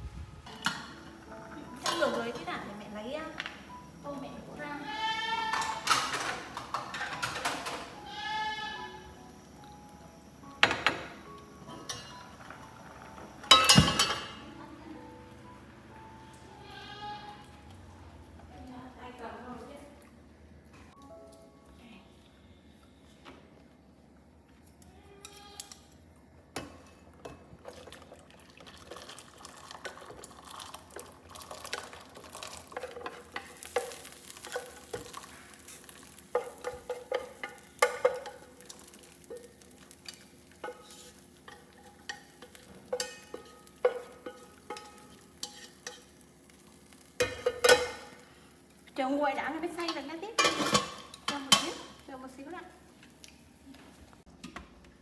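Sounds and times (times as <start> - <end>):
utensil scraping in cooking pot: 28.9 - 48.2.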